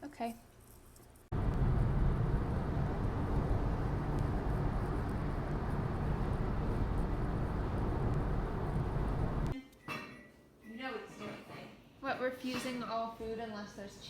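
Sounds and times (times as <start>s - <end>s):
low rumbling noise: 1.3s - 9.6s.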